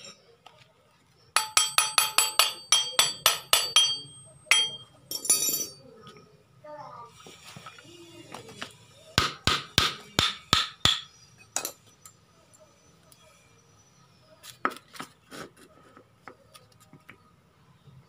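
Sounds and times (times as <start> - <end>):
hammer striking metal: 1.4 - 5.8, 9.2 - 11.8.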